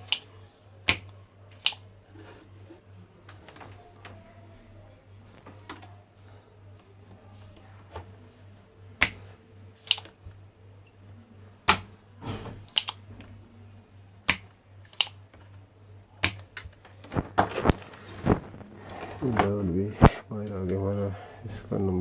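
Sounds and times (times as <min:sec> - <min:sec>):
tools clicking on circuit board: 0:00.0 - 0:01.8, 0:09.8 - 0:10.1, 0:12.7 - 0:13.0, 0:14.3 - 0:15.2, 0:16.2 - 0:16.8.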